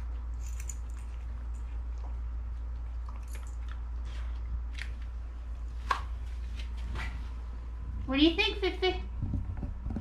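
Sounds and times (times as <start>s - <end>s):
dog crunching dry kibble: 0.0s - 6.5s
steady low hum: 0.0s - 10.0s.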